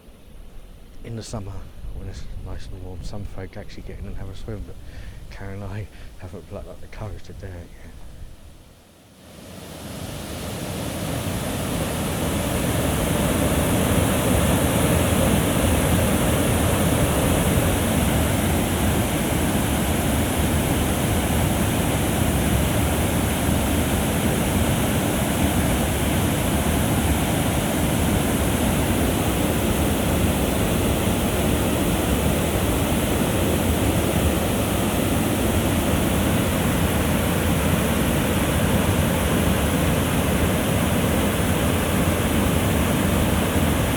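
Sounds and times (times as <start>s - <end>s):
waterfall rushing: 9.2s - 43.9s.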